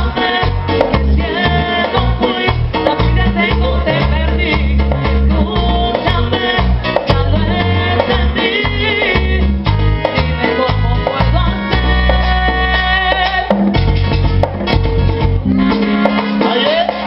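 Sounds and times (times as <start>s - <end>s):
latin dance band playing: 0.0s - 17.0s.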